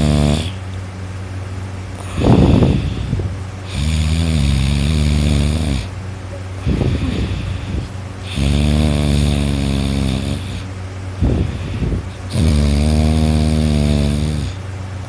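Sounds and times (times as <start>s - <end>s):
person snoring loudly: 0.0s - 0.6s, 2.0s - 5.9s, 6.6s - 14.6s
rough breath: 2.0s - 4.0s, 6.6s - 14.6s.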